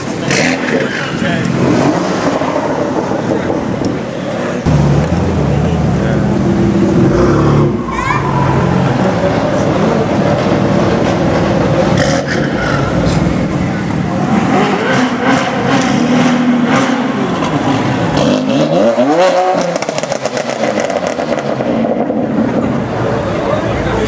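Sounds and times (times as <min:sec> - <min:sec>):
car engine with exhaust crackles: 0:00.0 - 0:24.0
engine revving: 0:04.6 - 0:21.6.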